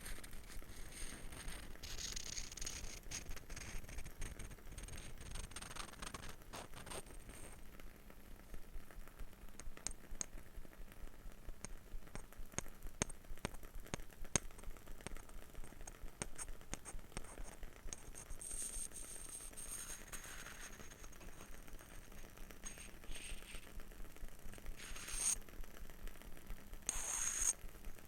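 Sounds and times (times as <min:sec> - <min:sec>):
rustling scrape: 0:22.6 - 0:23.7.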